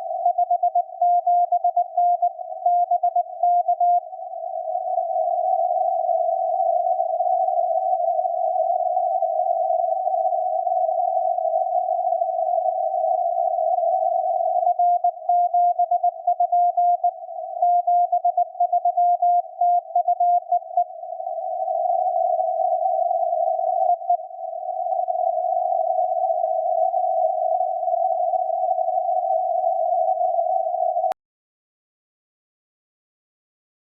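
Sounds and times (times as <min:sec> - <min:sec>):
morse code beeps: 0:00.3 - 0:04.0, 0:14.8 - 0:20.6.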